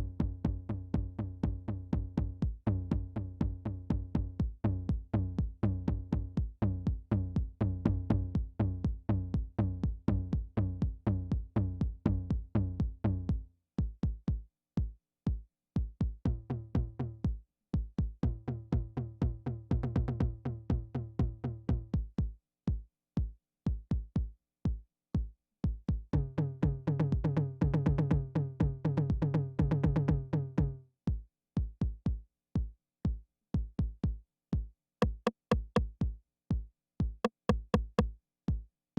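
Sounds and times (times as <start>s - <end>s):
drum machine beat: 35.0s - 36.0s, 37.1s - 38.1s.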